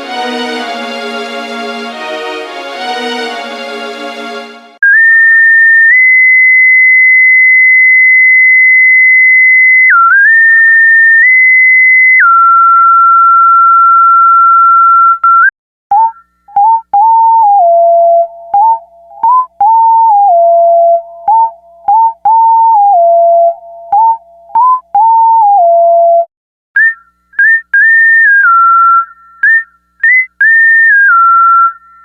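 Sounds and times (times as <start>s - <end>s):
electronic organ notes: 0.0s - 4.8s.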